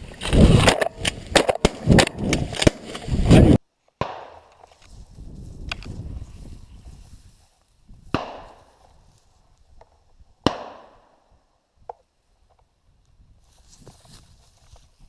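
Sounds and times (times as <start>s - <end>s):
shotgun shots: 8.1s - 8.6s, 10.4s - 11.1s.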